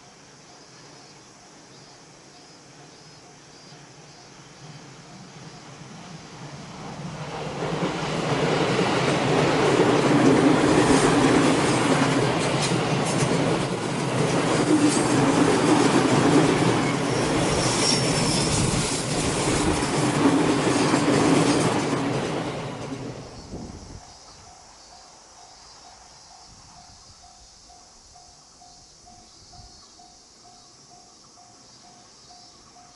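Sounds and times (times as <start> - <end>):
train wheels clattering: 7.2 - 23.5
high wheel squeal: 16.8 - 19.4.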